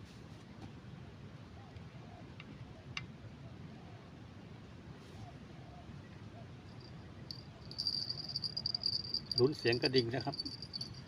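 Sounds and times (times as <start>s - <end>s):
low steady rumble: 0.0s - 11.0s
cricket trilling: 6.6s - 11.0s.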